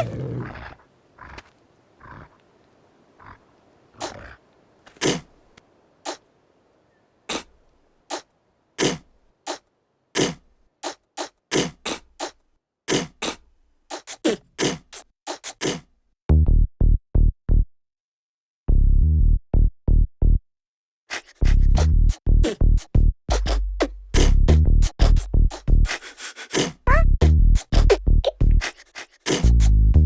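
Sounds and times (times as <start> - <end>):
deep bass pulses: 18.7 - 20.4, 21.5 - 25.9, 26.9 - 28.6.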